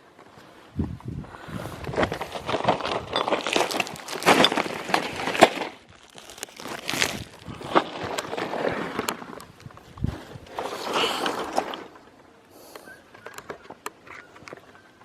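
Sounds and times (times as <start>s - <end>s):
plastic and paper litter crinkling: 1.6s - 12.1s.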